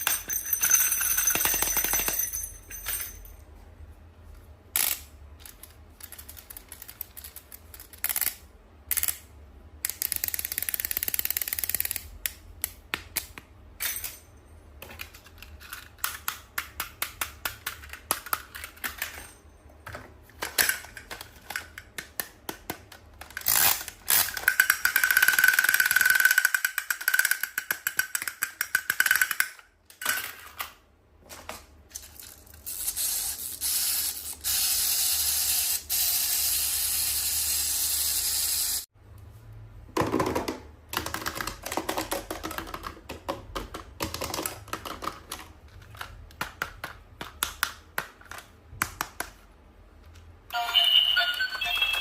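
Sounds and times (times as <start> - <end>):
toys and packaging clicking: 4.8 - 13.4, 14.8 - 19.2, 20.3 - 33.4, 40.9 - 49.4.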